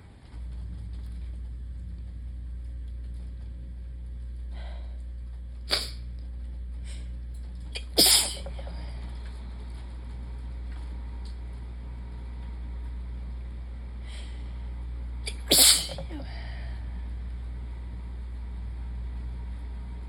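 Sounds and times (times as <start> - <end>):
steady low hum: 0.0 - 20.0
person sneezing: 5.7 - 6.0, 7.8 - 8.6, 15.3 - 16.4.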